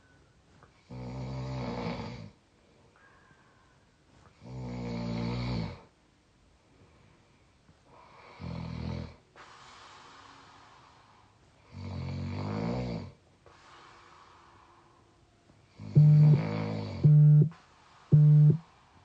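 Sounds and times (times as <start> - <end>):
person snoring: 15.8 - 17.5
loud steady buzzing tone: 16.0 - 18.6.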